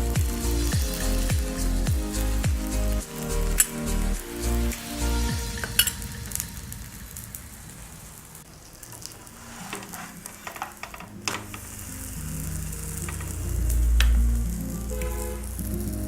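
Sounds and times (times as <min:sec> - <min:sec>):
flatbread sizzling in oil: 0:00.0 - 0:16.0
spatula scraping a pan: 0:09.2 - 0:11.9.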